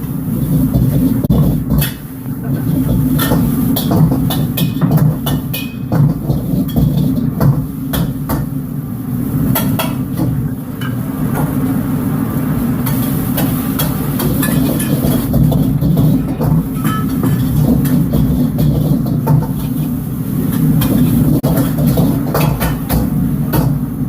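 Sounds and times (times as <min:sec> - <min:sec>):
wok burner rumbling: 0:00.0 - 0:24.0.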